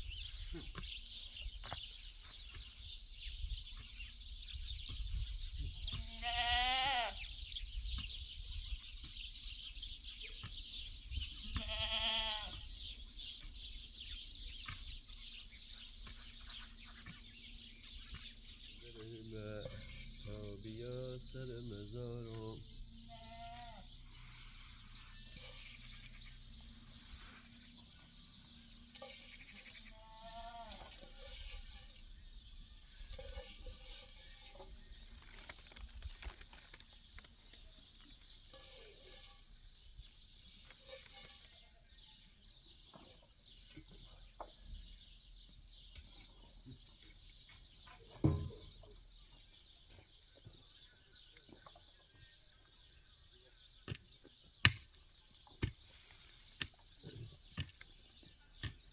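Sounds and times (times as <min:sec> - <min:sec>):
goats bleating: 0:06.1 - 0:07.2, 0:11.6 - 0:12.6.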